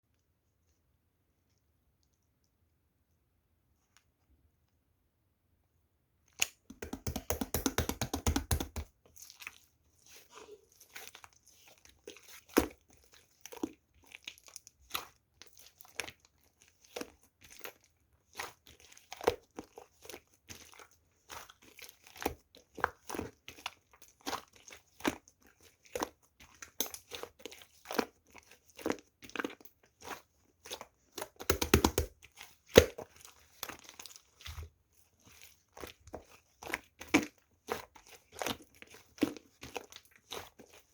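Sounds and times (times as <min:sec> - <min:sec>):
slime air-pocket pops: 0:06.4 - 0:08.8, 0:31.5 - 0:32.1.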